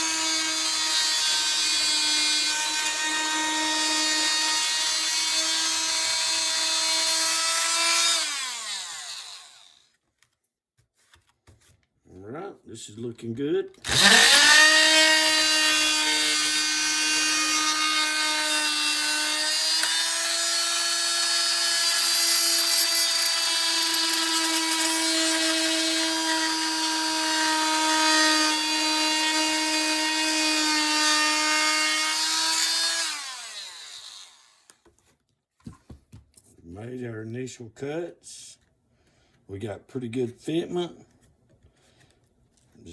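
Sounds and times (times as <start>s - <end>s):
power tool whining cutting plastic: 0.0s - 9.9s, 13.8s - 34.8s.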